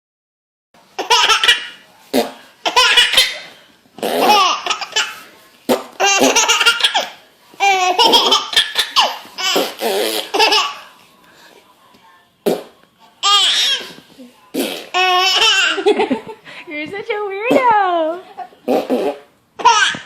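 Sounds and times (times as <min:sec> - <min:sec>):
baby laughing: 0:01.0 - 0:01.8, 0:02.6 - 0:03.4, 0:04.1 - 0:05.2, 0:06.0 - 0:10.8, 0:14.9 - 0:16.2, 0:19.6 - 0:20.0.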